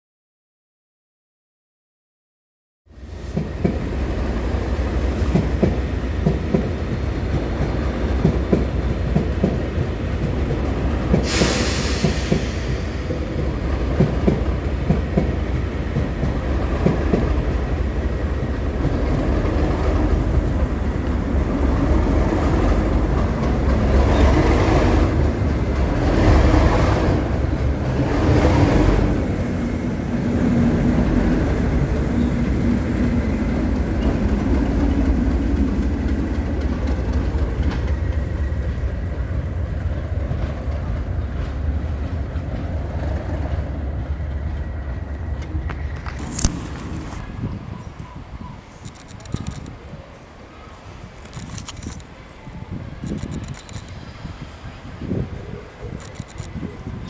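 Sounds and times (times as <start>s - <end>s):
diesel train rumbling: 2.9s - 57.0s
train clattering: 3.3s - 50.0s
sharp hiss: 11.1s - 13.4s.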